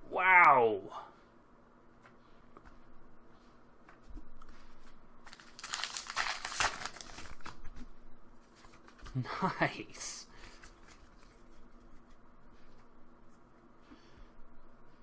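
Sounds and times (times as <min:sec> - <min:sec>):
foil wrapper crinkling and tearing: 0:05.2 - 0:07.8.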